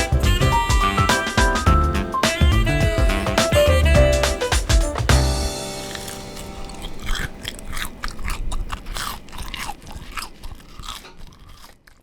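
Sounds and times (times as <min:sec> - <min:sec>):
crunchy chewing: 0:05.6 - 0:12.0.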